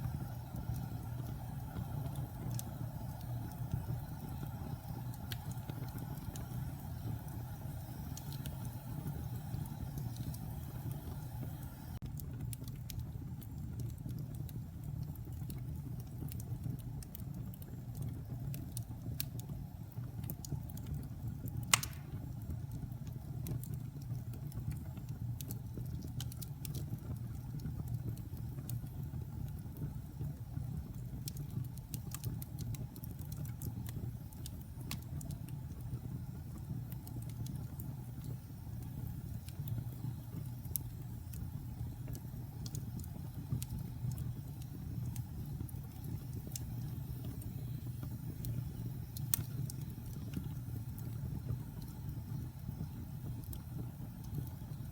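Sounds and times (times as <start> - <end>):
fire crackling: 0.0 - 54.9
fire rumbling: 0.0 - 54.9
sharp pop of fire: 21.7 - 22.4.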